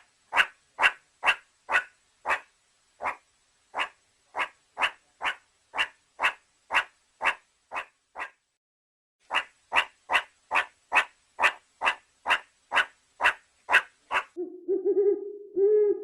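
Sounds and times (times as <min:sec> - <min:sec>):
dog barking: 0:00.3 - 0:03.2, 0:03.8 - 0:08.4, 0:09.3 - 0:14.4.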